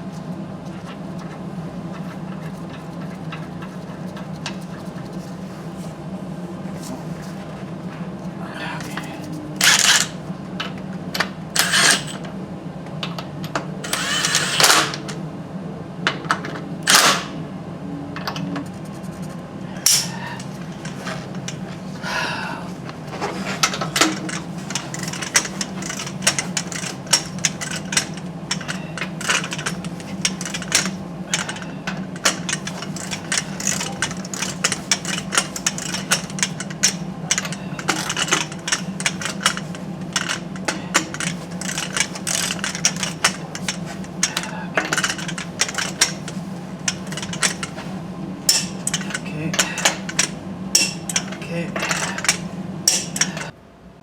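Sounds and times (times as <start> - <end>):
steady low hum: 0.0 - 54.0
loud scraping clanks: 11.6 - 12.2, 23.0 - 53.5
ratchet wrench clicking: 11.6 - 12.2, 13.9 - 15.0, 24.0 - 31.6, 32.2 - 47.8, 48.5 - 53.5.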